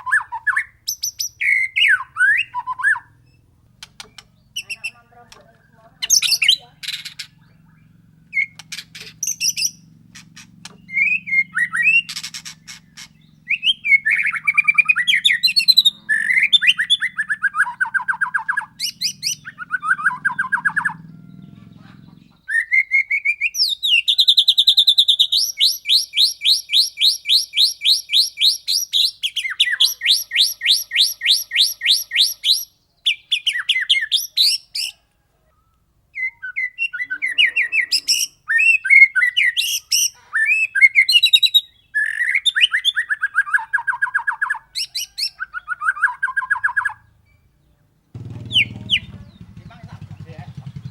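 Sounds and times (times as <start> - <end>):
bird singing whistled phrases: 0.0 - 3.4, 6.0 - 9.9, 10.6 - 21.6, 22.4 - 47.4.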